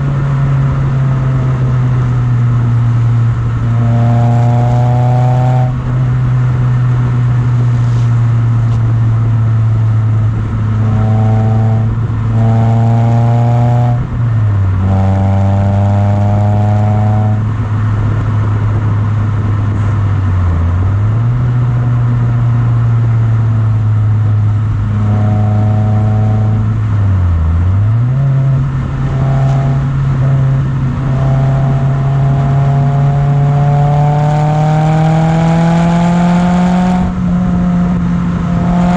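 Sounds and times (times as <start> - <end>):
car engine running: 0.0 - 38.9.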